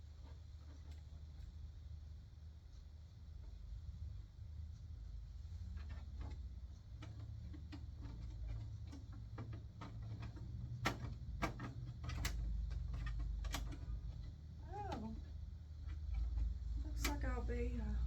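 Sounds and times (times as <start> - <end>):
low steady hum: 0.0 - 18.0
plastic clacks: 5.7 - 17.3.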